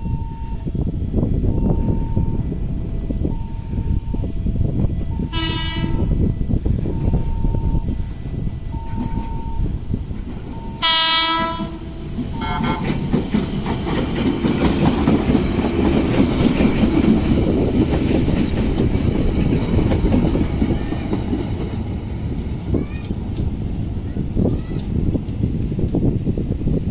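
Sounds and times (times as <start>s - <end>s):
train passing with rumble: 0.0s - 26.9s
train horn blasts: 5.2s - 7.9s, 10.6s - 13.0s
wheels clattering over rails: 11.4s - 25.5s.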